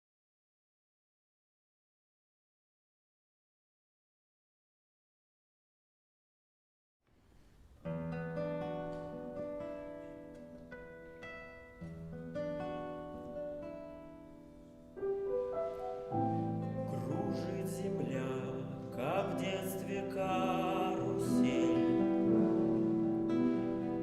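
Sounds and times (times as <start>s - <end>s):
guitar: 7.8s - 24.0s
piano: 7.8s - 24.0s.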